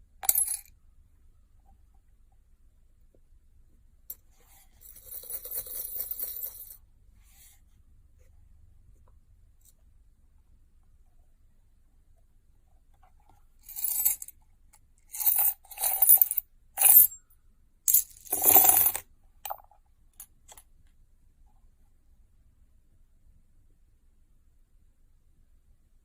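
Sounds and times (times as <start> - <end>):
coins clinking: 0.2 - 0.7, 13.7 - 14.3, 15.2 - 17.2, 17.9 - 19.0.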